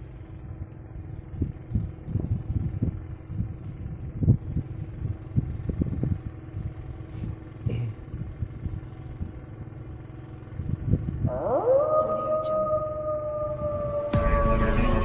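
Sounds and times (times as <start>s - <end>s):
wind buffeting microphone: 0.0s - 9.8s, 10.4s - 14.2s
tone sweeping upward: 11.3s - 15.0s.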